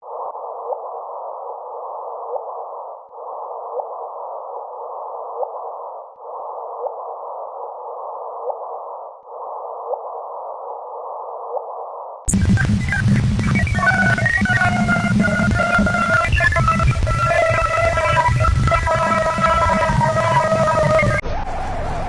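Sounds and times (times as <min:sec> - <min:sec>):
static-like hiss: 0:12.3 - 0:22.0.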